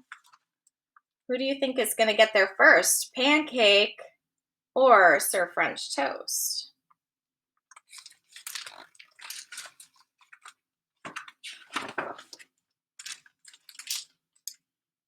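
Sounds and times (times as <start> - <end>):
book pages rustling: 7.8 - 14.0.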